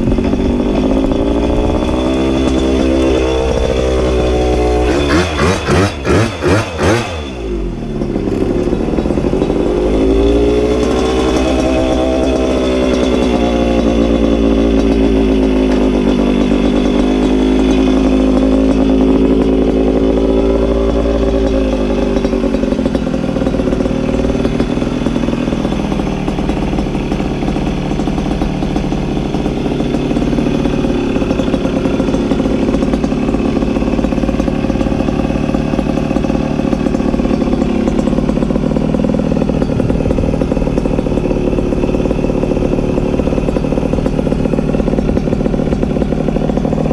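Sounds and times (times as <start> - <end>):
moped engine running: 0.0 - 46.9
wind rumble on microphone: 39.6 - 40.6.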